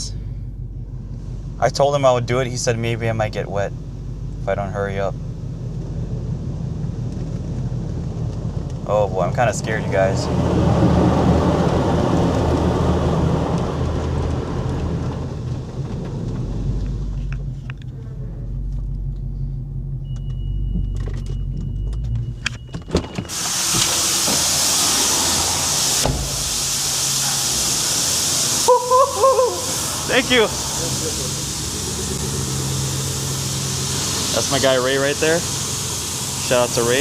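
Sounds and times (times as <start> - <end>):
car engine idling: 0.0 - 37.0
car wash water spray hissing: 5.7 - 15.8, 23.3 - 37.0.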